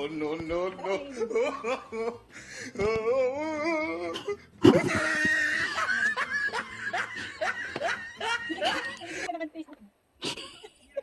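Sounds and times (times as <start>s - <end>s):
person laughing: 0.8s - 2.2s, 3.9s - 9.2s.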